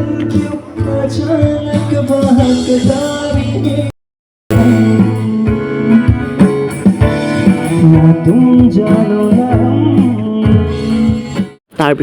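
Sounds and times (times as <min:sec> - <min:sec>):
person singing: 0:00.0 - 0:03.9, 0:04.5 - 0:06.4, 0:07.4 - 0:11.4
plucked guitar: 0:00.0 - 0:03.9, 0:04.5 - 0:11.6.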